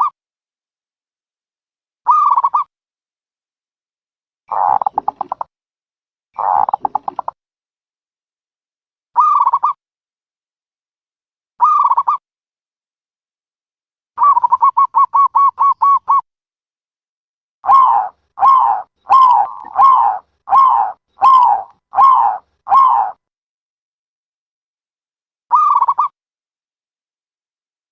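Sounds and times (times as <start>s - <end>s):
dove cooing: 6.4s - 7.3s, 17.6s - 23.2s.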